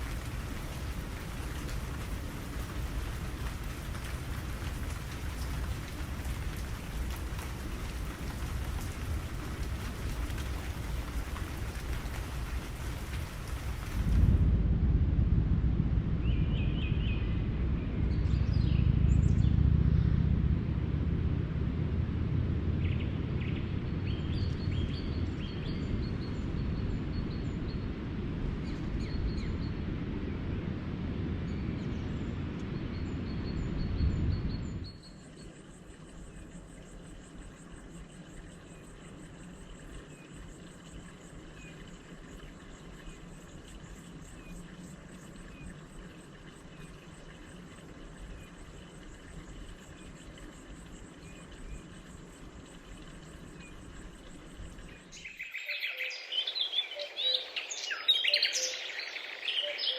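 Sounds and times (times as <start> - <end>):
steady rain: 0.0 - 16.2, 17.2 - 59.9
low rumble of thunder: 0.0 - 55.4
birds chirping: 31.5 - 59.9.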